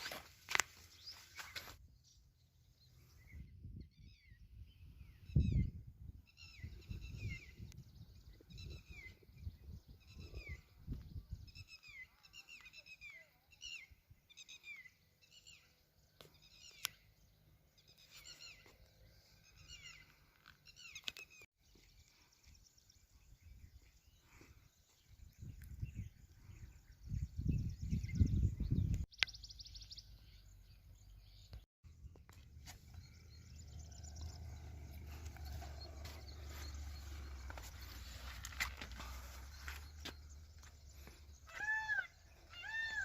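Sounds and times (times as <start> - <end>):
low rumble: 32.8 - 41.0.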